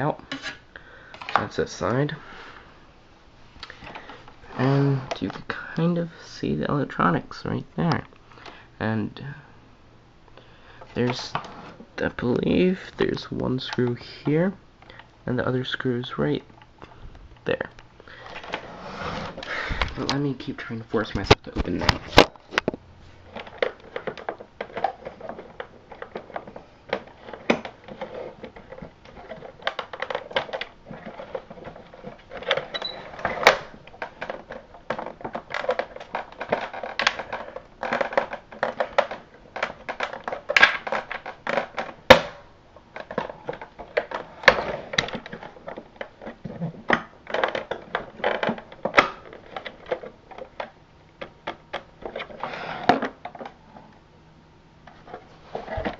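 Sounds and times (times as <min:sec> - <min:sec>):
plastic housing clicking and creaking: 0:21.1 - 0:42.2, 0:42.8 - 0:53.6.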